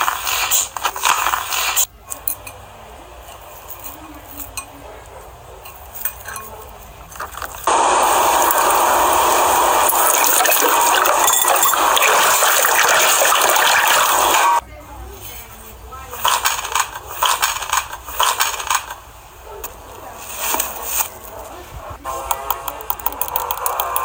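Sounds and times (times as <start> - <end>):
faint clinks and handling: 2.0 - 7.6
running water rushing: 7.7 - 14.6.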